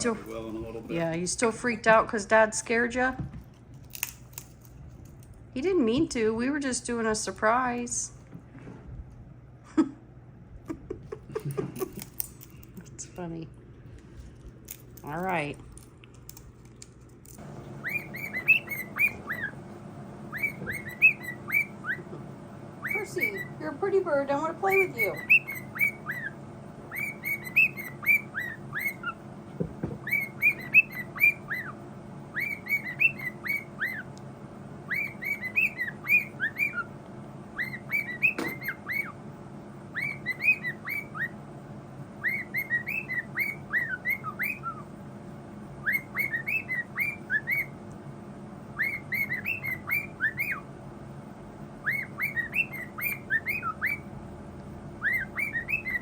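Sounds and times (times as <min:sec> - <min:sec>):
bird chirping whistled notes: 0:17.8 - 0:19.6, 0:20.3 - 0:22.1, 0:22.8 - 0:23.7, 0:24.6 - 0:29.2, 0:30.0 - 0:34.1, 0:34.9 - 0:36.9, 0:37.6 - 0:39.2, 0:39.9 - 0:41.4, 0:42.2 - 0:44.9, 0:45.8 - 0:47.7, 0:48.8 - 0:50.6, 0:51.8 - 0:54.1, 0:55.0 - 0:56.0.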